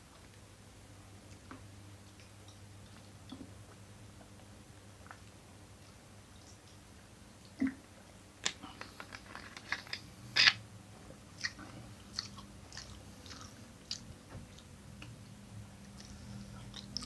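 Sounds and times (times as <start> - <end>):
person chewing noodles: 11.4 - 15.2, 15.8 - 17.0.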